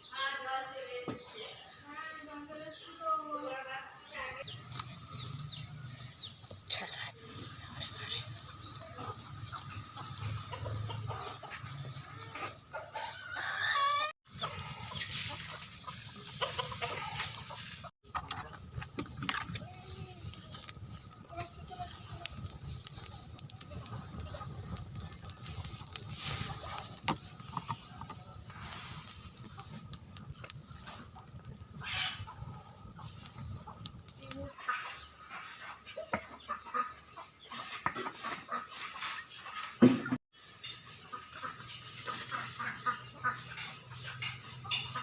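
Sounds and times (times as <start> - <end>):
chickens clucking: 4.0 - 45.0
rooster crowing: 13.1 - 14.1.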